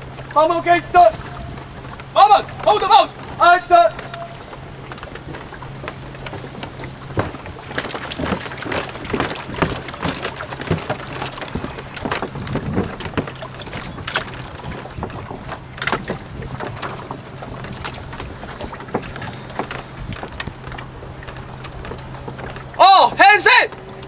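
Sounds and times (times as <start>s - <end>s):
oars knocking and splashing: 0.0s - 24.0s
steady low hum: 0.0s - 24.0s.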